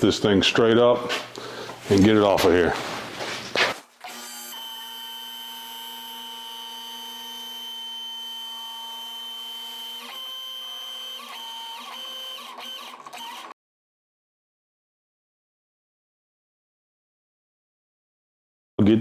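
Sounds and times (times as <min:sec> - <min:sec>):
electric hoist motor whining: 0:04.0 - 0:13.5.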